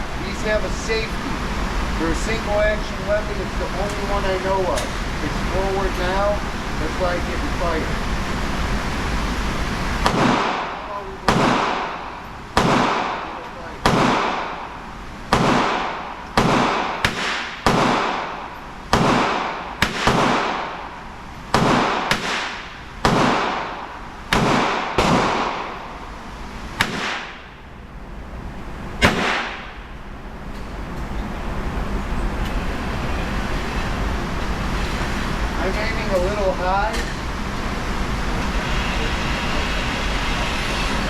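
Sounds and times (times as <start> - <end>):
low background rumble: 0.0 - 41.0
revolver gunshots with echo: 10.0 - 27.7, 29.0 - 30.0.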